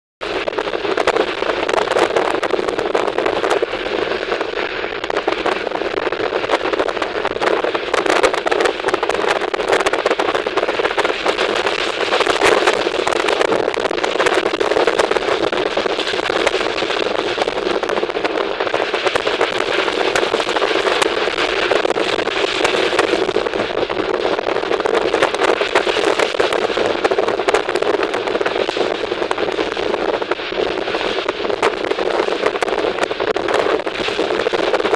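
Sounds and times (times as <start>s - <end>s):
crackling clicks: 0.2s - 34.9s.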